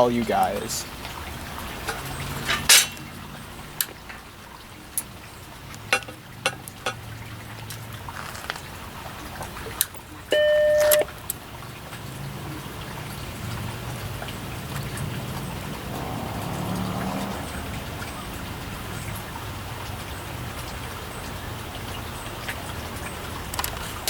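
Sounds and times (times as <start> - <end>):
computer startup beep: 10.3 - 11.1.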